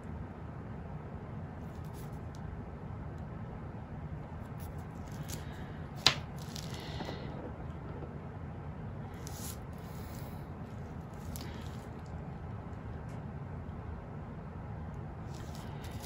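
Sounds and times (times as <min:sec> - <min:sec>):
steady low hum: 0:00.0 - 0:16.0
soft scraping and rustling: 0:04.5 - 0:08.1, 0:09.1 - 0:12.2, 0:15.3 - 0:16.0.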